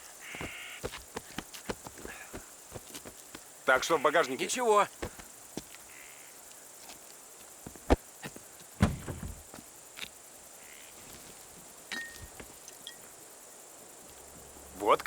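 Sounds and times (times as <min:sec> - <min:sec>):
small knocks: 0:07.7 - 0:09.6
heavy thud with rattle: 0:08.8 - 0:09.6.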